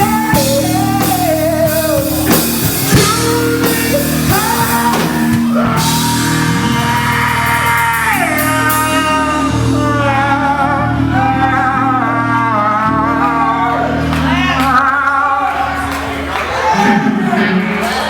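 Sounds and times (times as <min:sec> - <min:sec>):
drums and cymbals: 0:00.0 - 0:09.8
guitar and bass: 0:00.0 - 0:18.0
singer holding long notes: 0:00.0 - 0:18.0.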